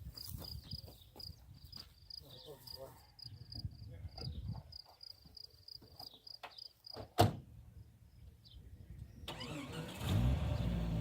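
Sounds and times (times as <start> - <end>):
insect chirping: 0.2 - 7.0.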